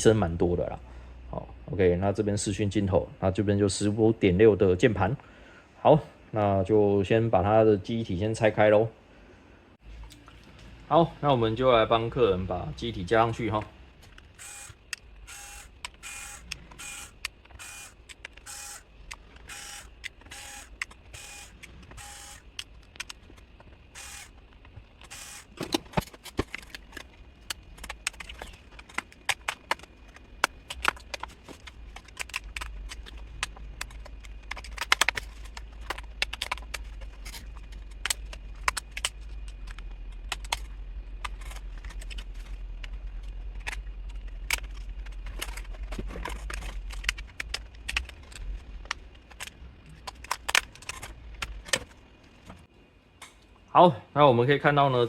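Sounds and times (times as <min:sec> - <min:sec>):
plastic cover clicks and scrapes: 0:25.0 - 0:43.0.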